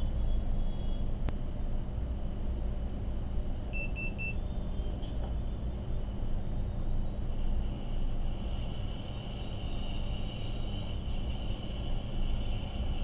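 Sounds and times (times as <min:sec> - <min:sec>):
steady low hum: 0:00.0 - 0:13.0
short electronic beeps: 0:03.7 - 0:04.6.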